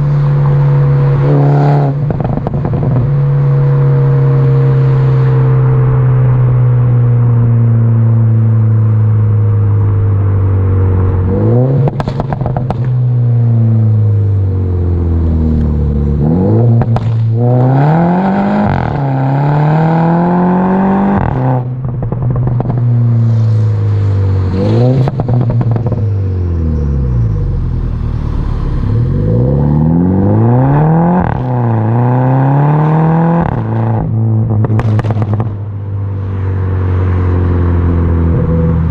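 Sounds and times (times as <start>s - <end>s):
car engine revving: 0.0s - 38.9s
exhaust pops and crackles: 2.0s - 3.1s, 11.8s - 13.2s, 16.7s - 17.4s, 21.2s - 23.0s, 25.0s - 26.0s, 34.5s - 35.6s.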